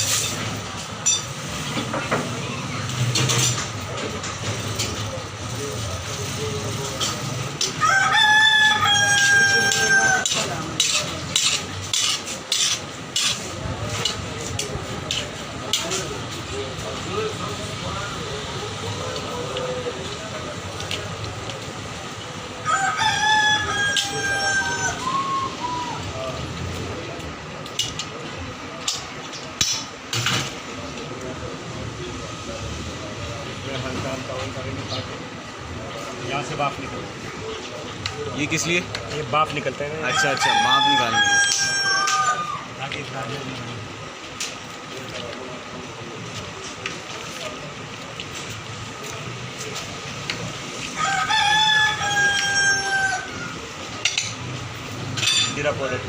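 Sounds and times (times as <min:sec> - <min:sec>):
kitchen bustle: 0:00.0 - 0:56.0
rooster crowing: 0:07.6 - 0:10.5, 0:22.6 - 0:26.0, 0:40.0 - 0:42.7, 0:51.0 - 0:53.6.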